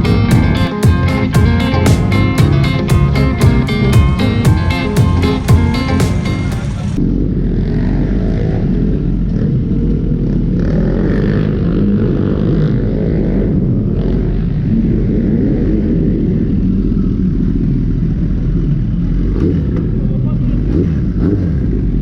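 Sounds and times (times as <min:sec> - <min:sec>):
motorcycle engine running: 0:00.0 - 0:22.0.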